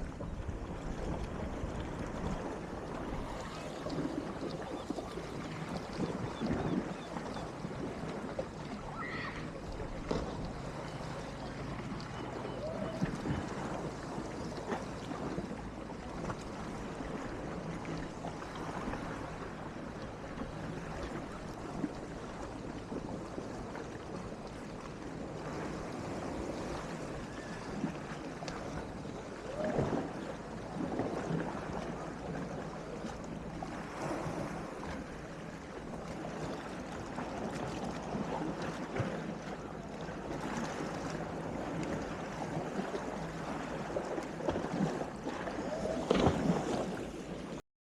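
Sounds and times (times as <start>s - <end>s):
small waves lapping: 0.0s - 47.6s
wind rumbling on microphone: 0.0s - 47.6s.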